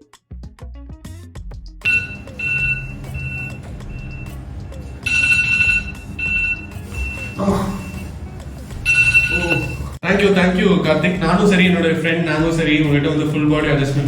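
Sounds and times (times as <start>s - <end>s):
high electronic beeping: 1.8s - 10.0s.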